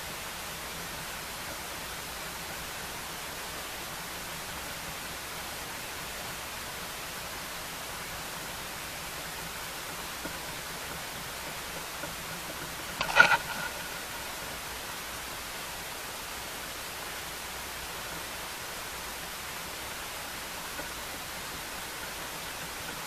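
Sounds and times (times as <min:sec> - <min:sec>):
steady hiss: 0:00.0 - 0:23.0
clatter of sharp knocks: 0:11.7 - 0:14.3.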